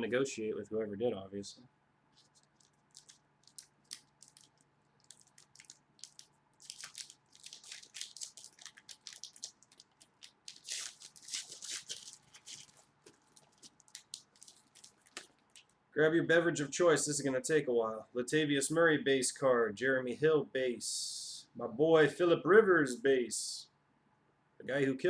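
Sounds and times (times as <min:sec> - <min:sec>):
foil wrapper crinkling and tearing: 0:02.1 - 0:15.8.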